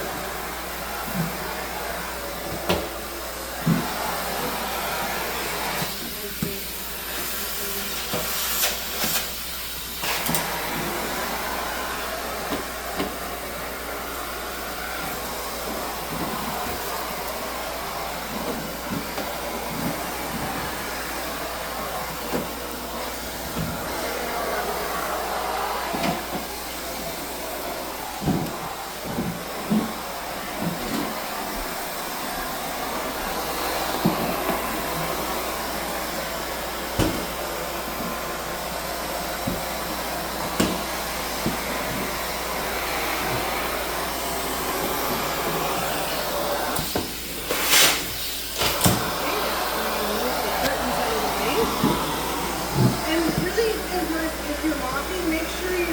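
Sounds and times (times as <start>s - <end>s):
vacuum cleaner suction hiss: 0.0s - 55.9s
vacuum tool knocking on floor: 28.2s - 29.9s, 37.0s - 37.3s, 40.6s - 42.1s, 51.6s - 53.7s.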